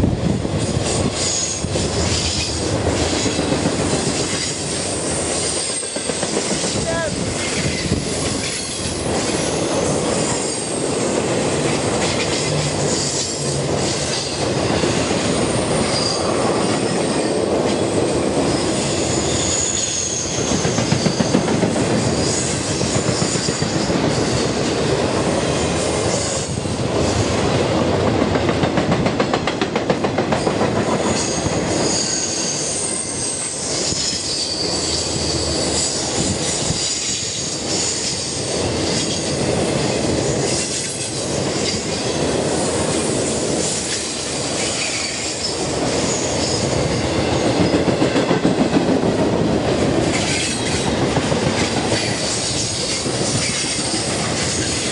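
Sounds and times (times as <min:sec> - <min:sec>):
train rumbling past: 0:00.0 - 0:54.9
high wheel squeal: 0:31.2 - 0:36.0.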